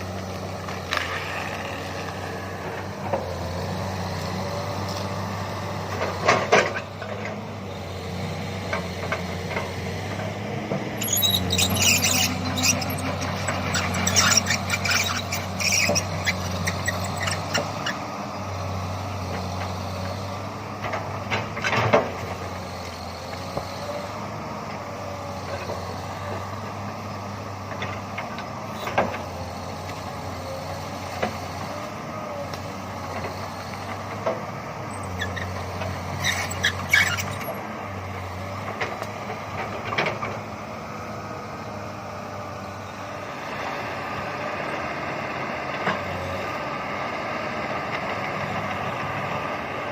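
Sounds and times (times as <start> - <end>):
excavator diesel engine running: 0.0 - 49.9
short squeals: 10.9 - 18.2, 34.9 - 37.6.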